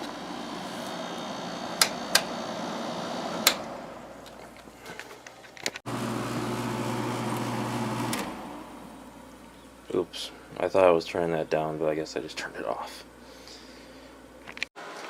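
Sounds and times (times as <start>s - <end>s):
blower fan winding down: 0.0s - 5.3s, 5.9s - 11.0s.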